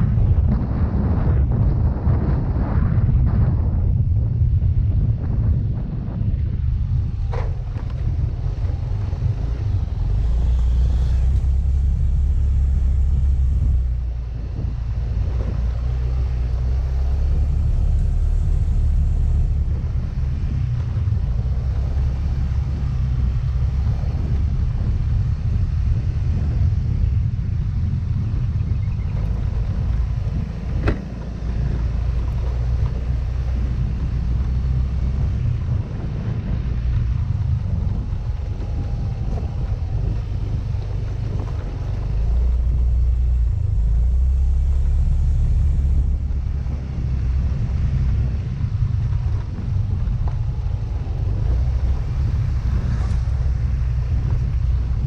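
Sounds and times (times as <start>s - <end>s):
wind and road noise: 0.0s - 55.0s
scooter engine running: 35.7s - 43.9s.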